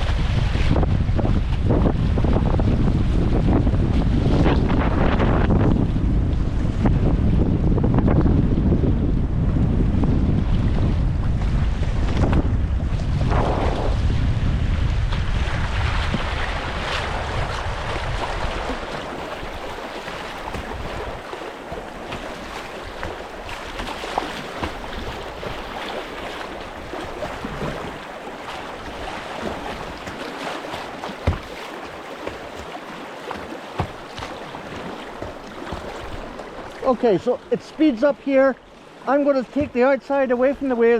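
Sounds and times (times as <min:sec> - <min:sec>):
river water rushing and splashing: 0:00.0 - 0:07.5, 0:10.6 - 0:40.9
wind buffeting microphone: 0:00.0 - 0:40.9
sharp knocks: 0:31.2 - 0:31.6.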